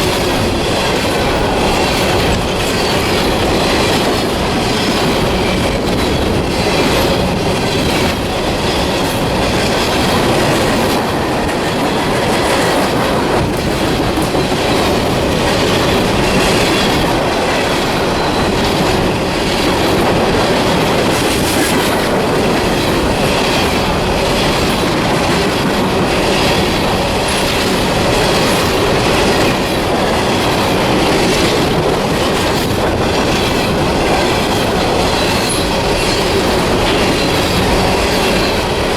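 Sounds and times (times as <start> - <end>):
train wheels rushing on rail: 0.0 - 38.9.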